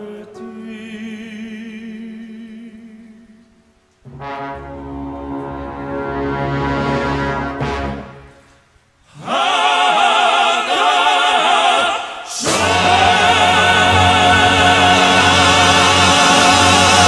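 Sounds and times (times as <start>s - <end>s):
operatic voices singing: 9.1s - 17.0s.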